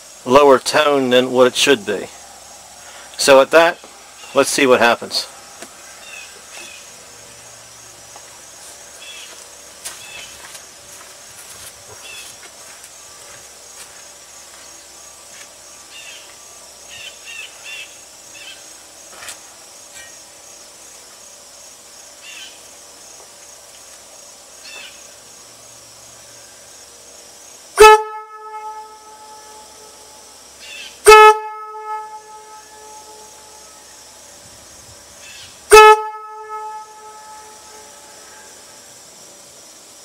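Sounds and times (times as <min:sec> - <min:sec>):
locomotive air horn blasts: 0:27.8 - 0:30.1, 0:31.0 - 0:33.9, 0:35.7 - 0:38.3.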